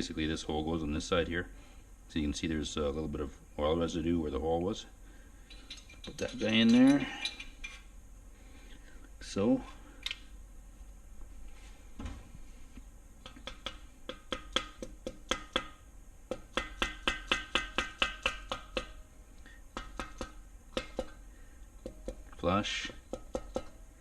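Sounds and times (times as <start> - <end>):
mallet tapping on metal: 13.2 - 19.0, 19.8 - 21.2, 21.8 - 22.3, 22.9 - 23.8.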